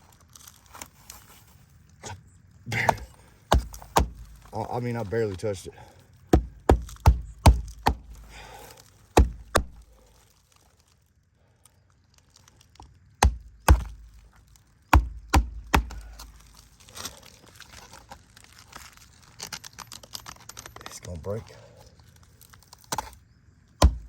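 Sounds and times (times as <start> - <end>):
nails hammered into roof shingles: 2.7 - 4.5, 6.3 - 9.9, 13.2 - 14.2, 14.9 - 16.5, 23.8 - 24.0.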